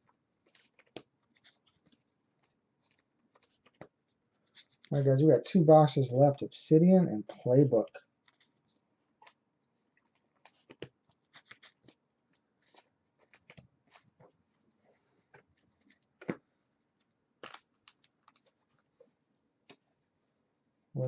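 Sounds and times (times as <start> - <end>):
trading cards being handled: 0.4 - 5.1, 7.8 - 19.0.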